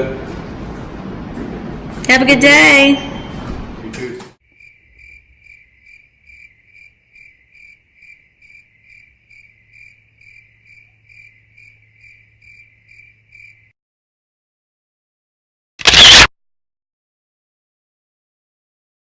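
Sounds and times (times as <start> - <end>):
short high-pitched chirps: 15.8 - 16.3.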